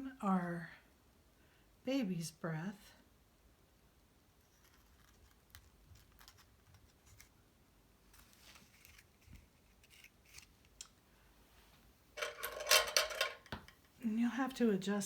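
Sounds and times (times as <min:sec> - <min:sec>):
paper rustling: 0:04.5 - 0:07.4, 0:08.1 - 0:10.7.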